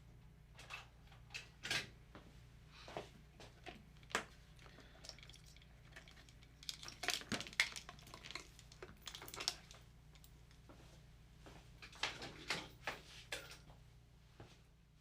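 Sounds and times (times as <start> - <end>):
small hard objects clinking: 4.6 - 9.8.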